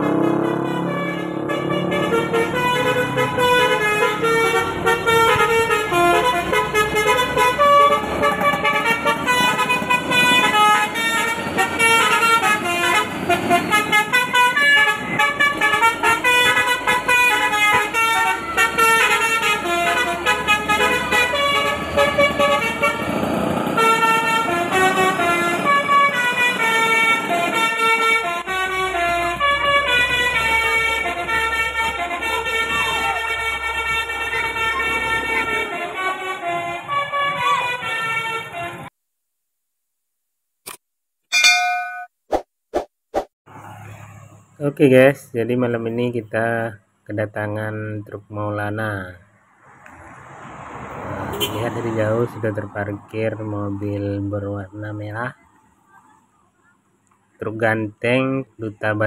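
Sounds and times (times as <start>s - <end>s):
multi-tone truck horn tune: 0.0s - 38.9s, 51.0s - 51.8s.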